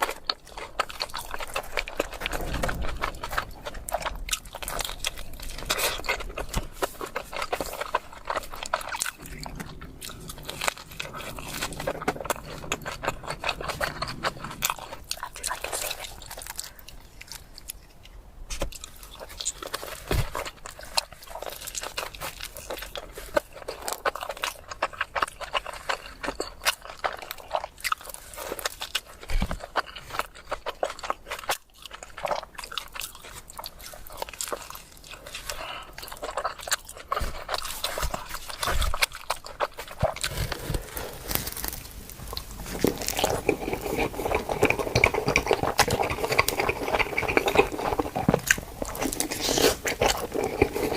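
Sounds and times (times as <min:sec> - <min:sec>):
biting and wet chewing: 0:00.0 - 0:50.9
mouth clicks and smacks: 0:36.2 - 0:50.9.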